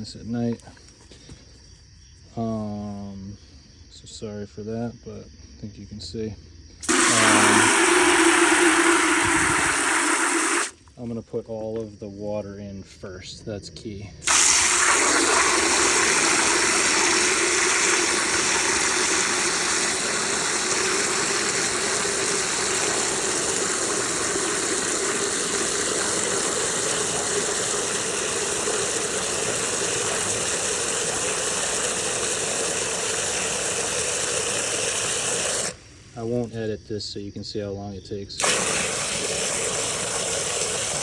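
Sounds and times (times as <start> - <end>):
water running into a bucket: 6.8 - 10.8, 14.2 - 35.8, 38.4 - 41.0.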